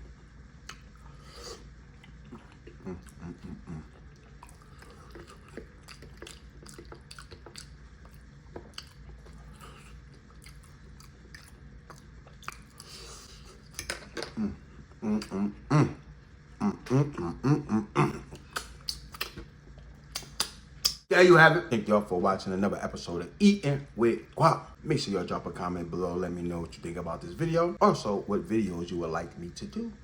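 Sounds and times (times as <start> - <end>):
person chewing wetly: 0.6 - 13.9, 18.2 - 21.0
mouth clicks and smacks: 18.0 - 19.5, 20.1 - 21.0.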